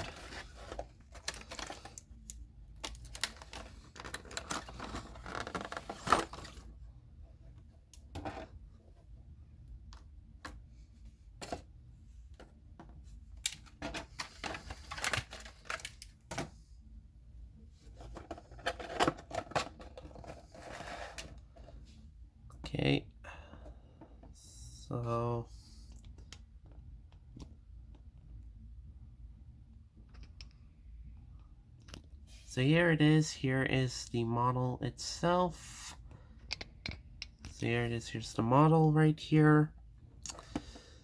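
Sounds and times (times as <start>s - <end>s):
cardboard packaging rustling: 3.0s - 6.7s.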